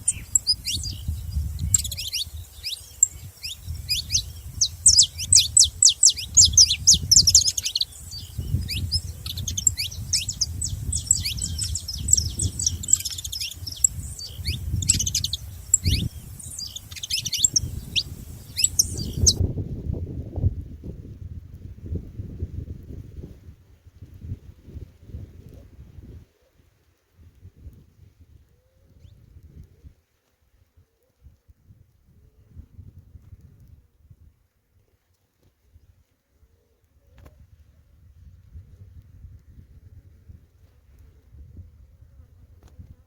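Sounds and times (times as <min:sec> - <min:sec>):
finches chirping and singing: 0:00.0 - 0:19.4.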